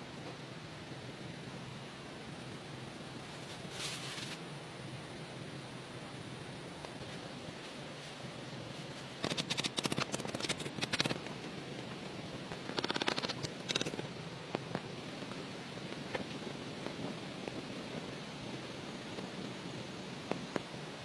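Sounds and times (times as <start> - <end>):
steady background hiss: 0.0 - 21.0
rapid rattling clicks: 9.2 - 11.3, 12.6 - 14.1.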